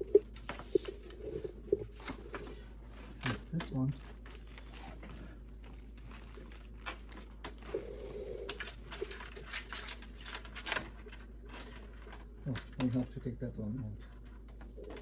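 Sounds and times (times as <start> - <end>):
computer parts clicking and tapping: 8.5 - 15.0.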